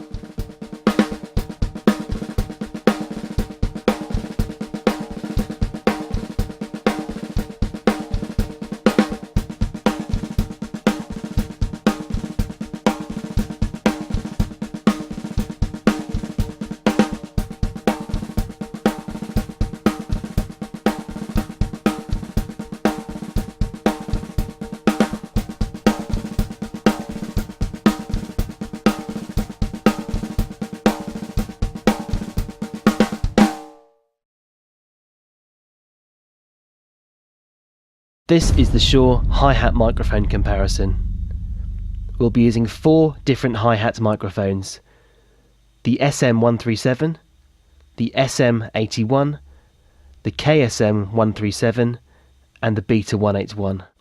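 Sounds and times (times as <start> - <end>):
kick drum: 38.4 - 43.6
ringing snare drum hits: 38.4 - 43.6.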